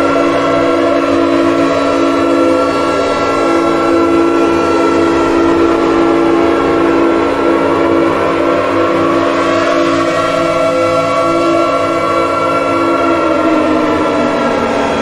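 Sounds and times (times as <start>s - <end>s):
outdoor warning siren: 0.0s - 15.0s.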